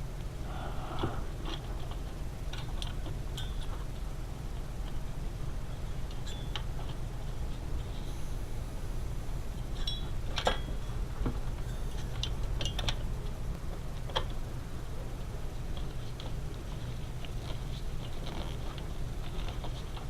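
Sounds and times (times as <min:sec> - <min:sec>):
steady low hum: 0:00.0 - 0:20.0.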